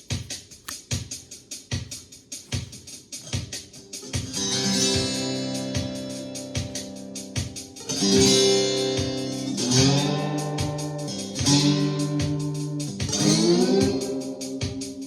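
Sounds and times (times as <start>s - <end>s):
steady ticking beat: 0.0s - 15.0s
slide guitar notes: 7.8s - 15.0s.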